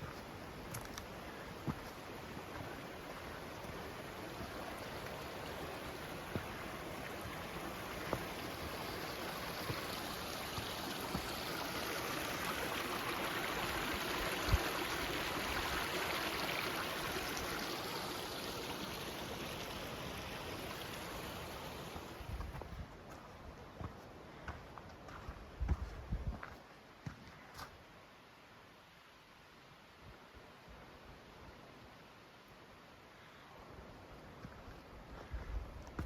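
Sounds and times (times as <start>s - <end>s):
mountain stream rushing: 0.0s - 23.2s.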